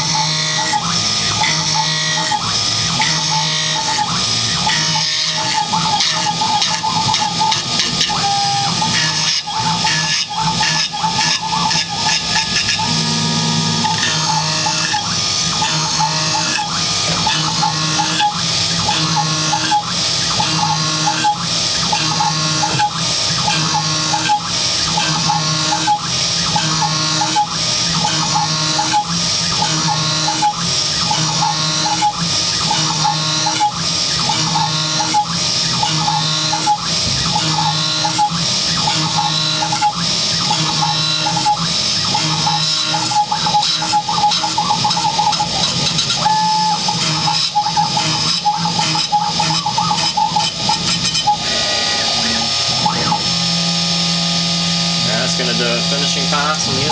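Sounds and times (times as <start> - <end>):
milling machine spindle running: 0.0 - 56.9
stepper motors whining: 0.0 - 56.9.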